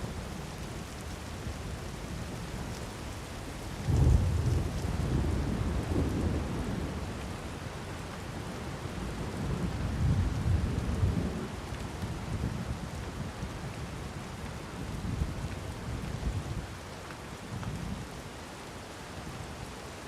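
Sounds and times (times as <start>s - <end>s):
heavy rain: 0.0s - 20.0s.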